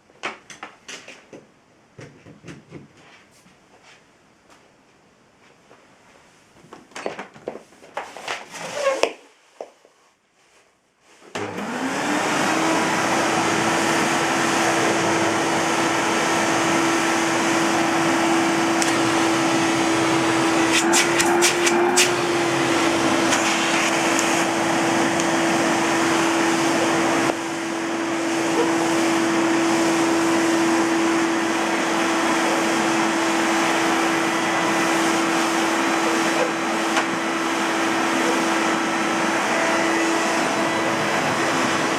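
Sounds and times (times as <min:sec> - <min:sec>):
vacuum cleaner motor running: 0:11.3 - 0:41.9.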